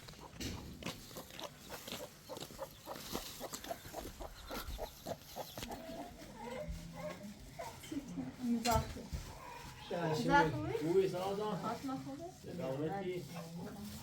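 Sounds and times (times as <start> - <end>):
farm animal calls: 0.0 - 7.2.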